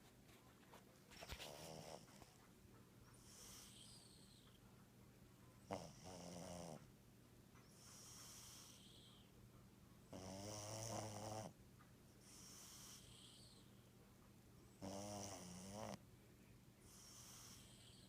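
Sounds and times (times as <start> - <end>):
soft hissing breath: 3.1 - 4.6, 7.6 - 9.4, 12.2 - 14.0, 16.8 - 18.0
cat snoring: 3.2 - 4.5, 5.7 - 6.8, 7.8 - 9.2, 10.1 - 11.6, 12.2 - 13.6, 14.8 - 16.0, 16.8 - 18.0.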